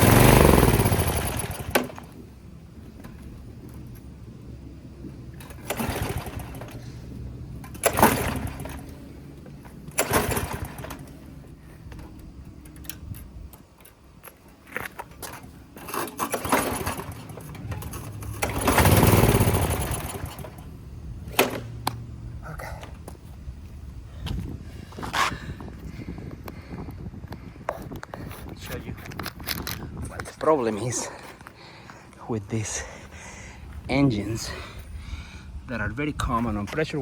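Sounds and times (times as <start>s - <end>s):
engine being pull-started: 0.0s - 2.2s, 5.3s - 11.4s, 14.7s - 22.0s.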